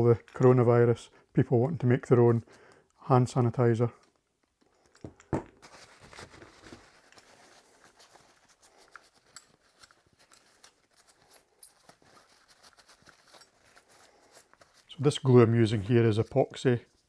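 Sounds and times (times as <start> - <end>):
scratchy rustling of hands: 5.5 - 17.0.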